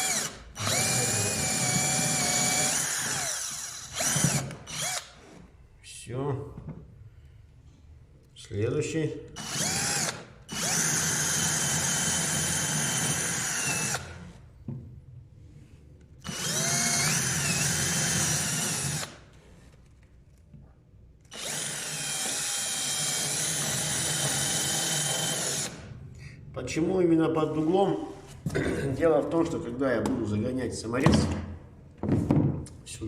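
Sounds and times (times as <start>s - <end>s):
cordless drill drilling into wood: 0.0s - 5.2s, 9.4s - 14.3s, 16.2s - 19.2s, 21.3s - 25.8s.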